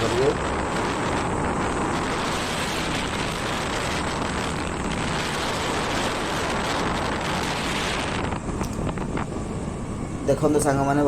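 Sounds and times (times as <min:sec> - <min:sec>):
rushing wind and road noise: 0:00.0 - 0:11.0.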